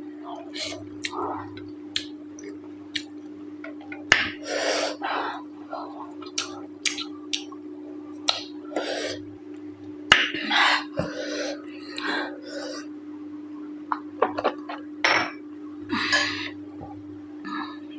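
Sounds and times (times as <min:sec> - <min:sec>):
steady low hum: 0:00.0 - 0:17.9
chewing and lip smacking: 0:00.7 - 0:03.2, 0:06.2 - 0:07.6.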